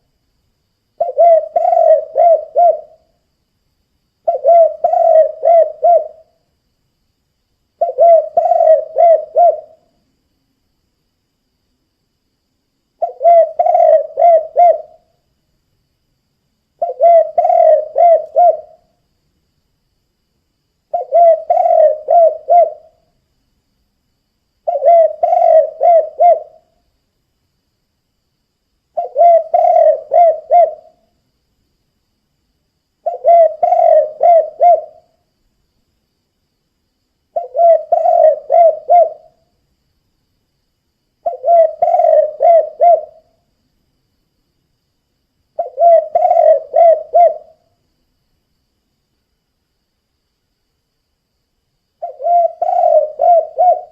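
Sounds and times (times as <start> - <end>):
dove cooing: 1.0 - 3.1, 4.2 - 6.3, 7.8 - 9.9, 13.0 - 15.1, 16.8 - 18.8, 20.9 - 23.0, 24.6 - 26.7, 29.0 - 31.0, 33.0 - 35.1, 37.4 - 39.4, 41.2 - 43.4, 45.6 - 47.6, 52.0 - 53.9.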